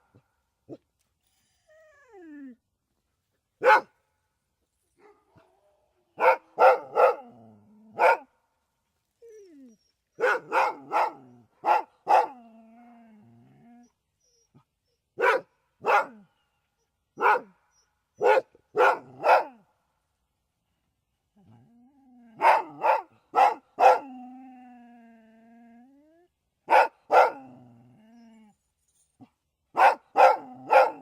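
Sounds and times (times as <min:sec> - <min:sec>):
dog barking: 0:03.6 - 0:04.0, 0:05.0 - 0:05.5, 0:06.2 - 0:07.4, 0:08.0 - 0:08.3, 0:10.2 - 0:12.4, 0:15.2 - 0:16.3, 0:17.2 - 0:17.6, 0:18.2 - 0:19.6, 0:22.4 - 0:24.1, 0:26.7 - 0:27.5, 0:29.8 - 0:31.0
dog whining: 0:09.2 - 0:10.2.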